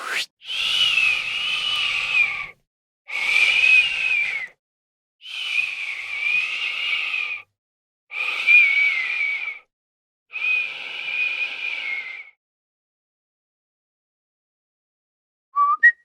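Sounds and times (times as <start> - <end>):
breathy whistling: 0.2 - 2.6, 5.2 - 7.5, 8.2 - 9.7, 15.6 - 16.0.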